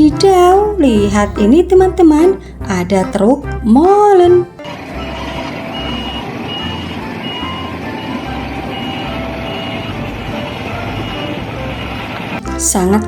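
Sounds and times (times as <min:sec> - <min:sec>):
low engine rumble: 0:00.0 - 0:13.0
truck reversing alarm beeping: 0:01.1 - 0:13.0.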